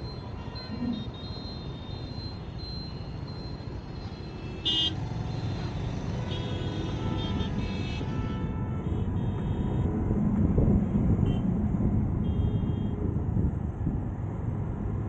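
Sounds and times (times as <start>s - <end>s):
road traffic: 0.0s - 15.0s
vehicle horn toot: 4.5s - 9.9s.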